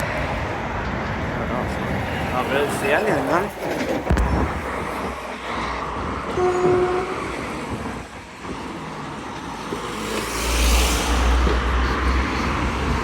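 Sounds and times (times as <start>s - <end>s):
road traffic: 0.0s - 13.0s
vehicle passing close: 9.2s - 13.0s.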